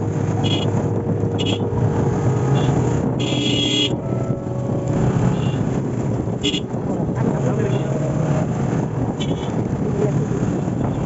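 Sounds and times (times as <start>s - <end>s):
vehicle engine hum and rumble: 0.0s - 11.0s.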